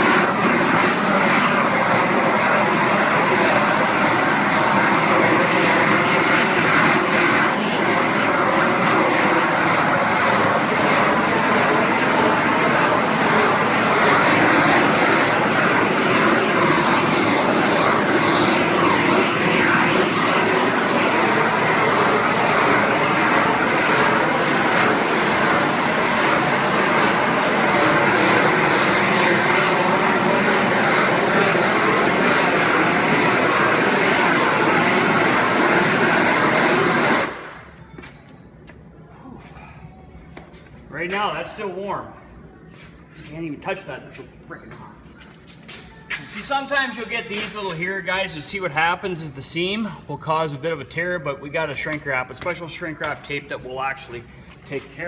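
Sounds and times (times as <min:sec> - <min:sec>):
heat gun flame rushing: 0:00.0 - 0:37.8.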